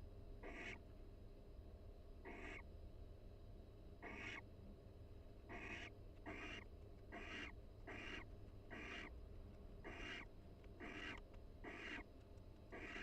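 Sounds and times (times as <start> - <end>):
low steady hum: 0.0 - 13.0
owls giving breathy hissing calls: 0.4 - 0.8, 2.3 - 2.6, 4.0 - 4.4, 7.2 - 9.1, 9.8 - 10.2, 10.8 - 12.0.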